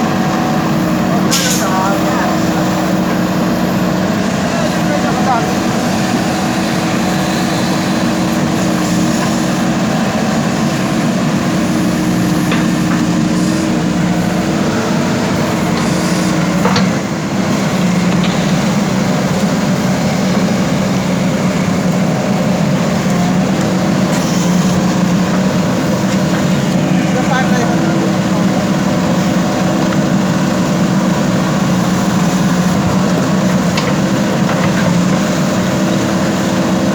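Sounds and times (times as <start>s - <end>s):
diesel engine running: 0.0s - 36.9s.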